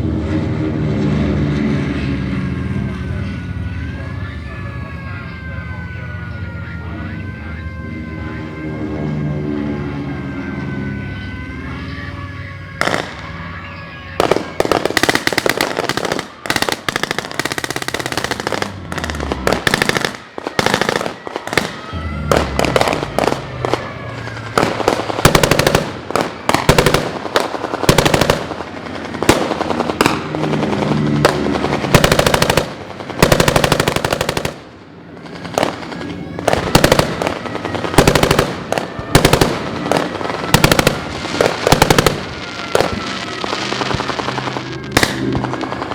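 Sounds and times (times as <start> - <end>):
air-raid siren wailing: 0.0 - 45.9
machine guns firing: 24.6 - 34.7, 35.3 - 45.9.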